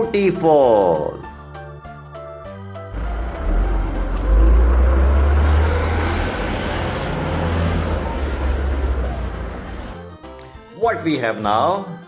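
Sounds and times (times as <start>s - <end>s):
vehicle engine rumbling: 2.9s - 10.0s.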